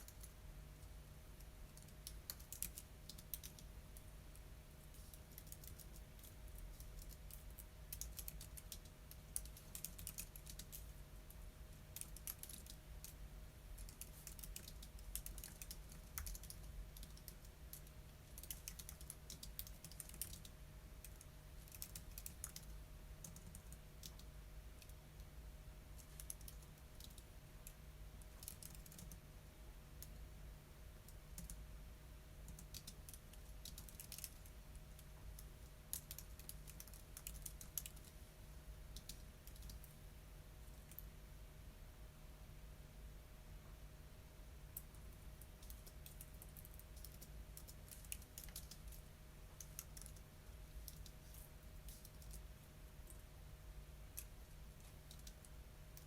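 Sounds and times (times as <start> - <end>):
typing on a keyboard: 0.0 - 0.4, 1.4 - 3.7, 5.0 - 13.2, 13.8 - 25.0, 26.0 - 29.2, 31.1 - 31.6, 32.4 - 38.2, 38.9 - 39.9, 44.8 - 49.0, 49.6 - 51.2, 51.9 - 52.5, 54.2 - 56.0
faint steady hum: 0.0 - 56.0.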